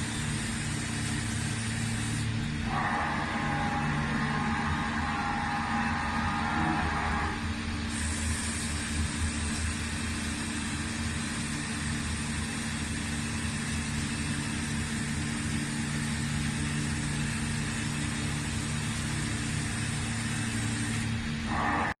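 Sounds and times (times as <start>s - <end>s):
lathe motor hum: 0.0s - 7.9s, 16.2s - 22.0s
lathe hiss: 17.4s - 21.9s.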